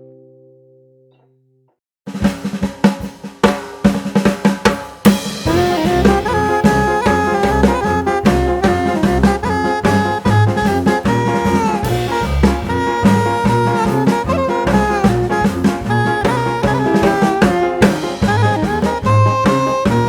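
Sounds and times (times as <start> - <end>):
drum kit: 2.1 - 20.0
upbeat jazz swing music: 4.0 - 20.0
saxophone or brass: 5.4 - 20.0.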